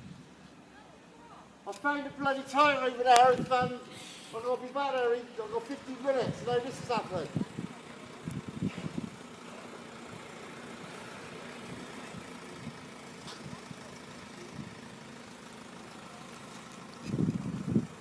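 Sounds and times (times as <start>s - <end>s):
diesel train engine idling: 0.0s - 18.0s
wind buffeting microphone: 2.1s - 3.9s, 6.2s - 9.2s, 17.0s - 18.0s.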